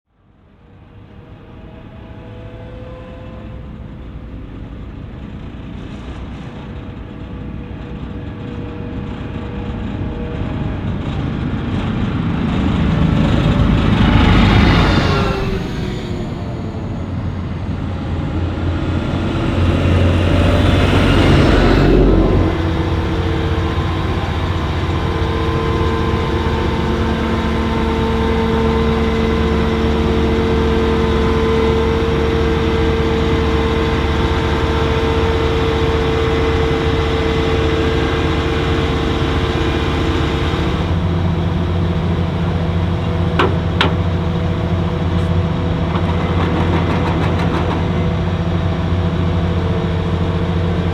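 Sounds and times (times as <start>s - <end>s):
farm machinery engines droning: 3.4s - 50.9s
machine passing close: 12.7s - 45.3s.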